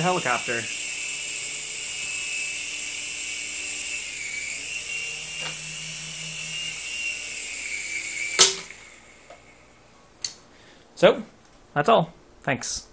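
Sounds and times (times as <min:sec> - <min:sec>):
model helicopter motor whining: 0:00.0 - 0:09.8.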